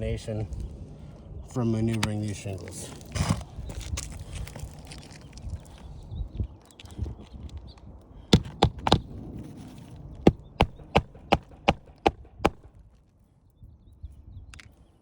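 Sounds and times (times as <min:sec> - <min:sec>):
hammer blows on shingle roof: 0:08.4 - 0:09.1, 0:10.3 - 0:12.8.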